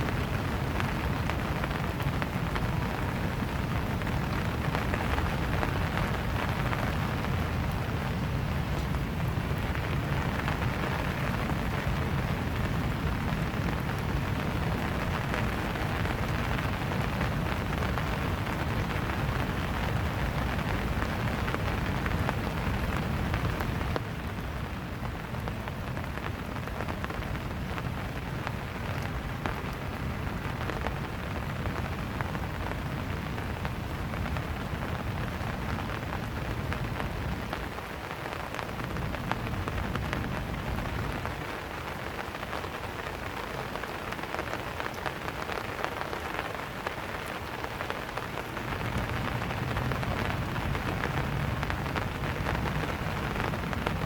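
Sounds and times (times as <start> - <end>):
rain pattering: 0.0 - 54.0.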